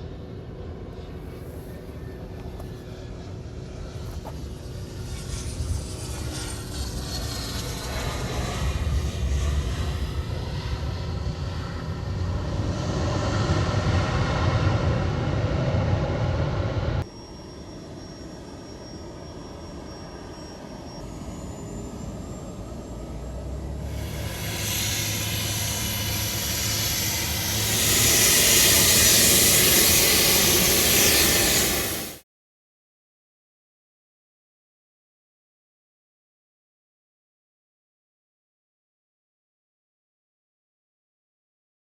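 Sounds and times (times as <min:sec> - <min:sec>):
jet engines whining and roaring: 0:00.0 - 0:32.2.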